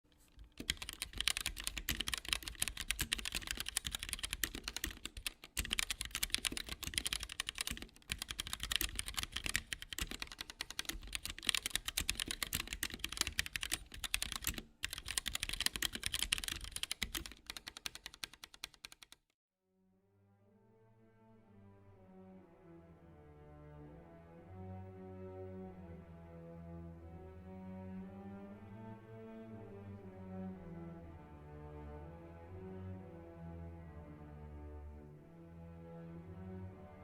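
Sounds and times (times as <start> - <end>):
fast typing on mechanical keyboard: 0.2 - 19.3.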